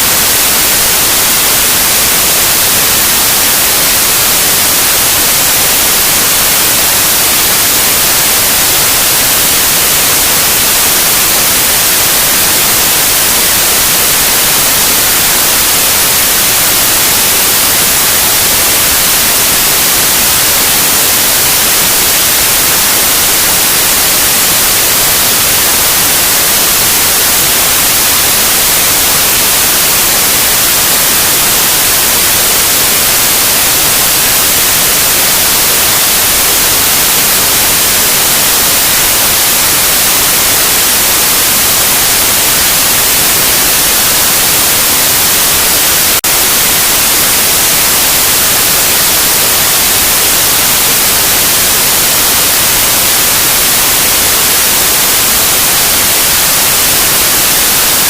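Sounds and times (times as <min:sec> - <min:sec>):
loud white noise hiss: 0:00.0 - 0:58.0.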